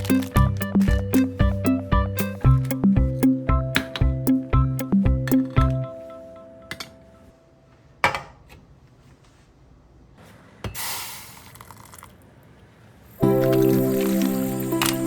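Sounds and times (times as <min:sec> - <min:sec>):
background music: 0:00.0 - 0:07.7, 0:13.2 - 0:15.0
brief hiss: 0:10.8 - 0:11.9.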